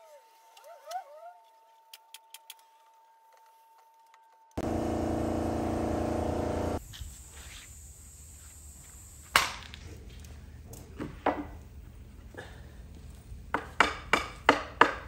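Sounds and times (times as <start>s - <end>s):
motor running loudly: 4.6s - 6.8s.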